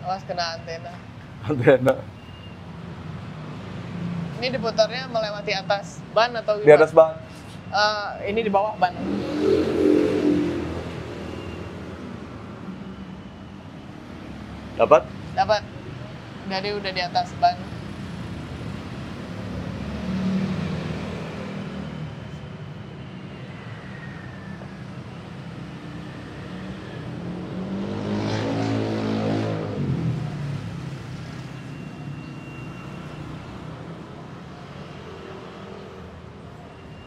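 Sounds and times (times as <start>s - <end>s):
low traffic hum: 0.0s - 37.0s
vehicle engine passing by: 8.9s - 11.7s, 18.9s - 22.1s, 26.2s - 31.3s.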